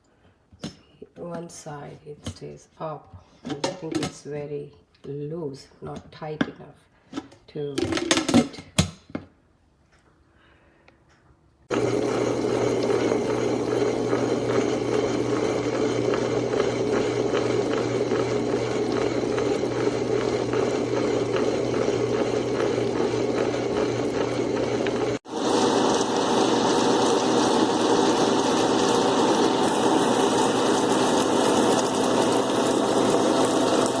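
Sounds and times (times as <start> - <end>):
wet grinder motor humming: 11.7 - 34.0.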